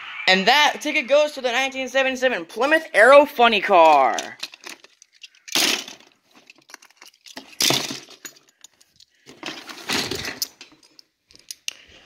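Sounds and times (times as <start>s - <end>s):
metal toy cars clinking: 3.9s - 11.8s.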